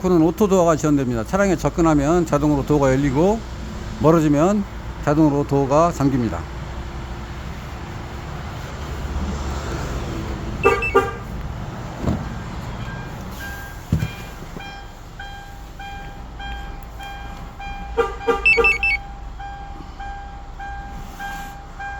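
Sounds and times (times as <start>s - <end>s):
car alarm chirping: 10.6s - 11.2s, 12.9s - 21.9s
electronic beeping pattern: 18.4s - 19.0s.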